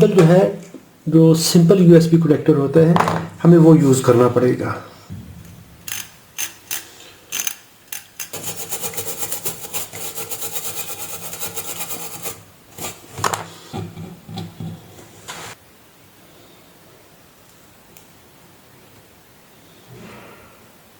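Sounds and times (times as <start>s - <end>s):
steady hum: 3.2s - 13.0s
fast ratcheting rattle: 5.8s - 12.4s
small mechanical clicks: 5.9s - 8.4s.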